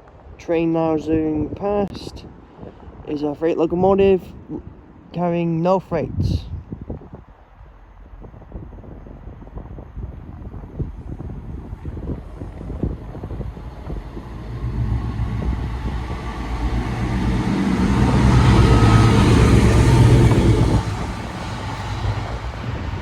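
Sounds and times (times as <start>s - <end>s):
diesel locomotive passing: 10.4s - 23.0s.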